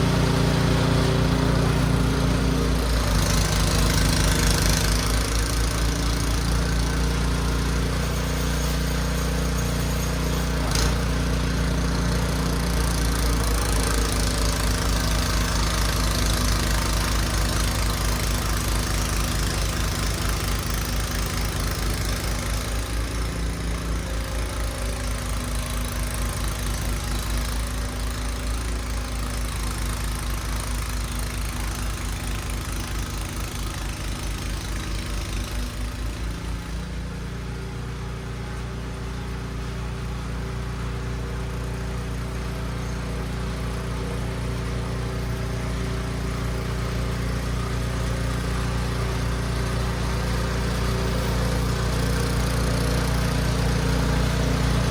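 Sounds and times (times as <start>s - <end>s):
snow blower engine running: 0.0s - 54.9s.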